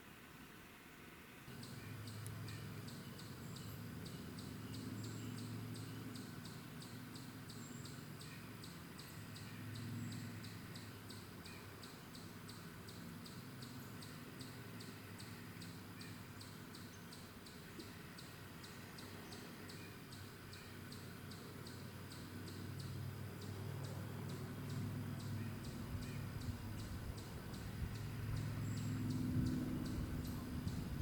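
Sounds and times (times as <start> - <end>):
insect chirping: 1.5 - 31.0.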